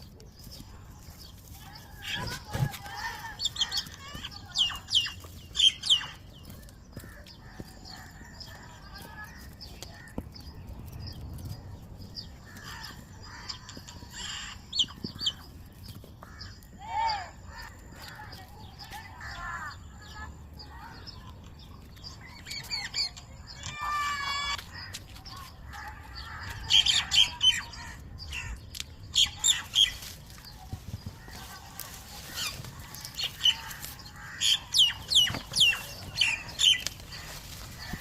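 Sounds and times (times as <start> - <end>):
birds chirping: 0.0 - 38.0
low bird calls: 0.0 - 38.0.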